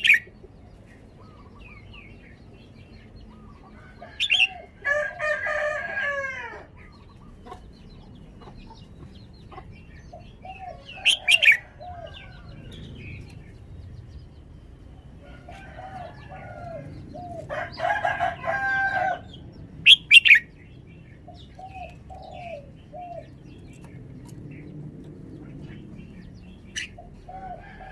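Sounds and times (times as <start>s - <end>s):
bulbul singing: 0.0s - 0.5s, 19.1s - 27.6s.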